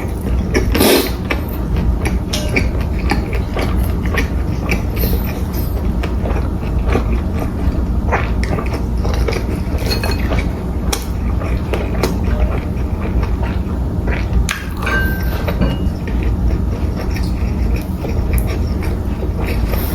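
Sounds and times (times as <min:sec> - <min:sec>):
chewing and biting: 0:00.0 - 0:19.9
steady low hum: 0:00.0 - 0:19.9
utensils clicking against dish: 0:00.7 - 0:05.9, 0:09.8 - 0:11.1.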